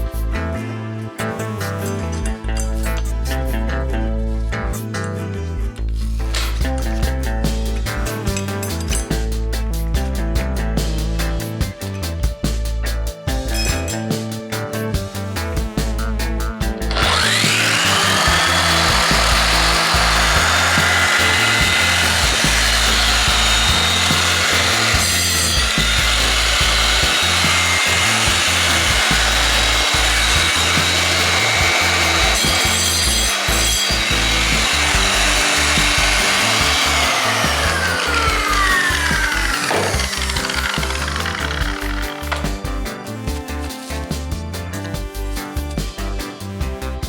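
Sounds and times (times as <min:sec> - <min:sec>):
sander motor whining: 0:16.9 - 0:42.6.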